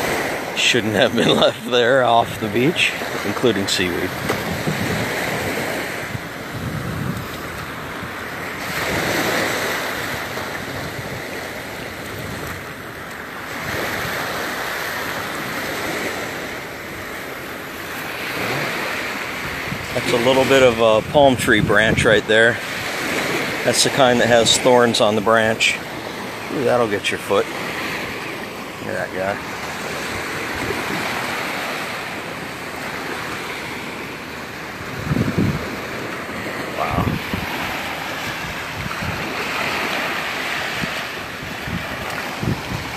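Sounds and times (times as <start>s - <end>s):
wind on microphone: 0.0s - 12.8s, 18.3s - 24.9s, 34.8s - 42.9s
waves breaking on beach: 0.0s - 42.9s.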